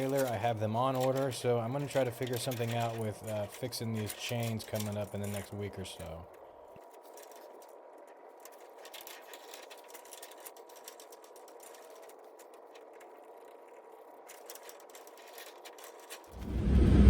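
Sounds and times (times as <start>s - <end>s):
loud vehicle rumble: 16.4s - 17.0s.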